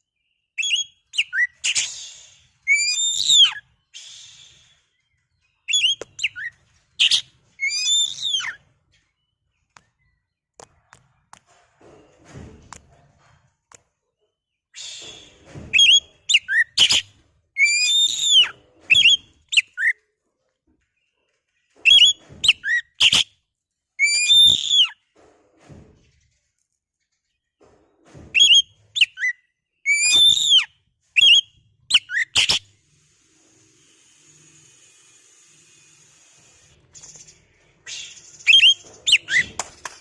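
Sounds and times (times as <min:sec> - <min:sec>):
songbird whistled song: 0:00.2 - 0:08.6, 0:14.7 - 0:20.0, 0:21.8 - 0:23.3, 0:24.0 - 0:25.0, 0:28.3 - 0:32.7, 0:37.0 - 0:39.6.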